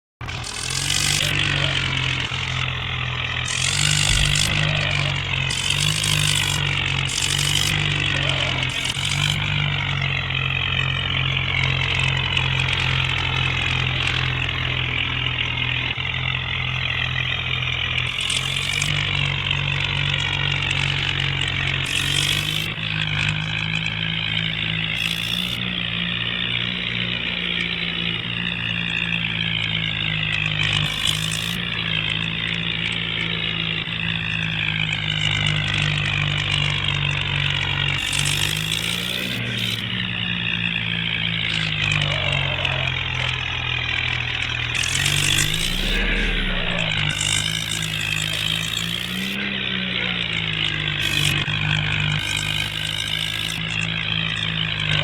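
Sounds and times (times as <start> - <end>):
bulldozer engine running: 0.2 - 55.0.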